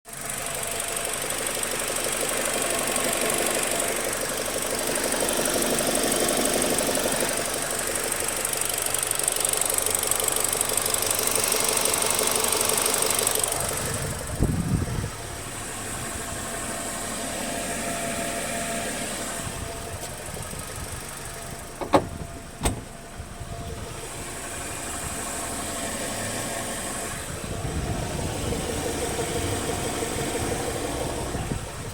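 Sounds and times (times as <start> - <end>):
car engine running: 0.1 - 31.9
low thump: 21.8 - 22.9.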